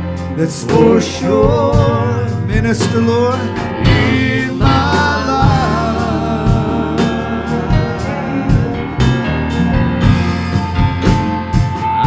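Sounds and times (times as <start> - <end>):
drum beats: 0.0 - 12.0
gospel band playing: 0.0 - 12.0
person singing: 0.2 - 10.8.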